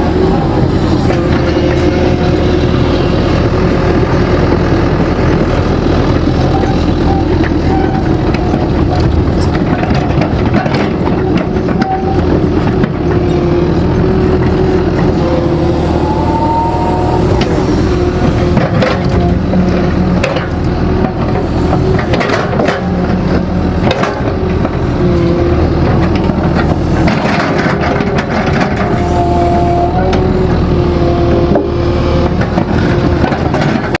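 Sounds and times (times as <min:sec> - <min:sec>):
excavator engine running: 0:00.0 - 0:34.0
high shifting engine tone: 0:13.3 - 0:20.3.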